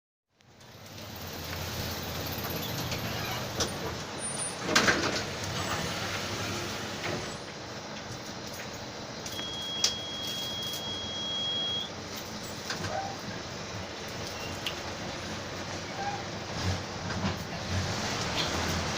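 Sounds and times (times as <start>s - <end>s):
bus engine running: 0.4s - 18.9s
thin steady high tone: 9.3s - 11.9s.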